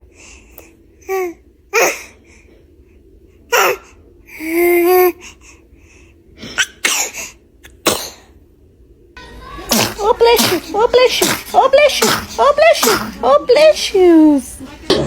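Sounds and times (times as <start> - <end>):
baby sneezing: 6.5 - 8.3, 9.7 - 13.4
baby vocalizing: 9.6 - 13.8.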